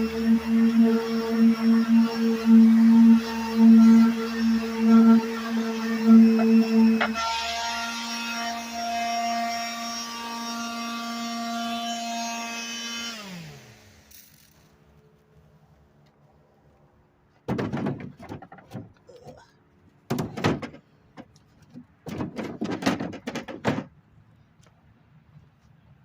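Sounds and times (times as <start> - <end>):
electric sander whining: 0.0 - 14.1
rough scraping and knocking: 17.4 - 19.0, 20.1 - 24.0.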